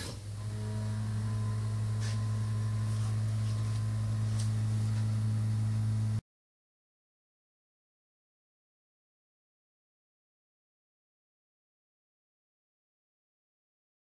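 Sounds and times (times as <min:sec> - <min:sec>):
low electrical hum: 0:00.0 - 0:06.2.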